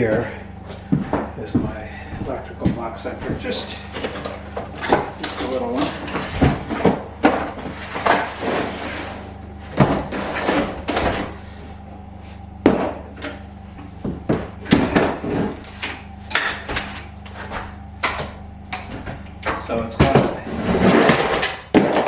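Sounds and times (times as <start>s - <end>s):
electrical box knocks and clatters: 0.0s - 8.8s, 14.0s - 22.0s.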